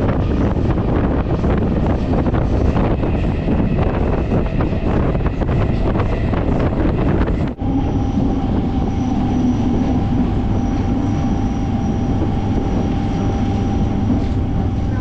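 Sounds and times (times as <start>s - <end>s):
electric train rumble and whine: 0.0s - 15.0s
wind noise on microphone: 0.0s - 15.0s.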